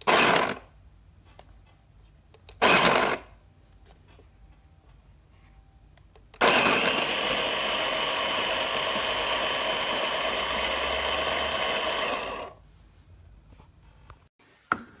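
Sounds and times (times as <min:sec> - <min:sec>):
coffee grinder grinding beans: 0:02.6 - 0:03.2, 0:06.4 - 0:12.6.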